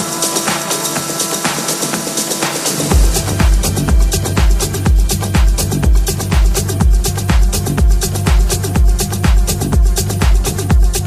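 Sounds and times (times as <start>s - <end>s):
kick drum and bass beat: 0.0s - 11.0s
tech house music: 0.0s - 11.0s.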